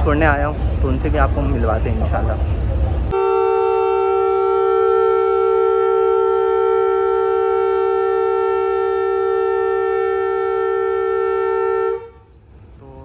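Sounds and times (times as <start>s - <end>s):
locomotive air horn blast: 2.8s - 13.0s.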